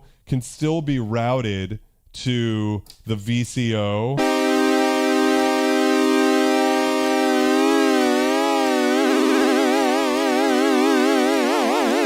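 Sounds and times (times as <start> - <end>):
synthesizer sustained note: 4.2 - 12.0.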